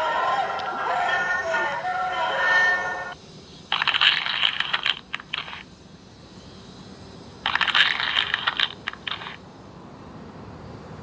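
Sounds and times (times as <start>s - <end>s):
sleigh bells jingling: 0.0s - 3.2s.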